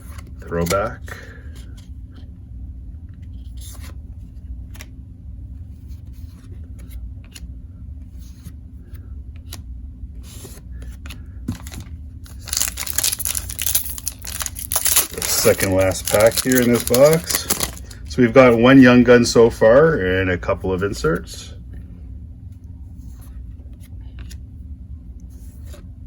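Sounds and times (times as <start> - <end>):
cards shuffling: 0.0 - 2.2, 5.9 - 7.5, 10.2 - 18.8
low steady hum: 0.0 - 26.0
card pack wrapper ripping: 11.5 - 18.0.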